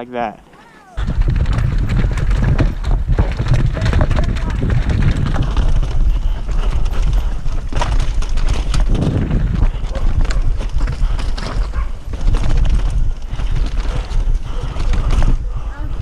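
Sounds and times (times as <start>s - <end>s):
mountain bike rattling: 0.0s - 16.0s
tyres clattering over stones: 1.0s - 9.9s
wind rumble on microphone: 1.0s - 16.0s.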